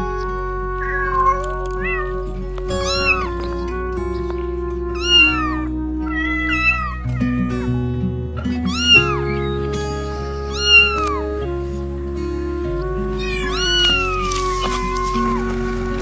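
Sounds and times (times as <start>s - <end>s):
background music: 0.0s - 16.0s
cat meowing: 0.8s - 7.7s, 8.7s - 9.6s, 10.3s - 11.5s, 13.1s - 15.7s.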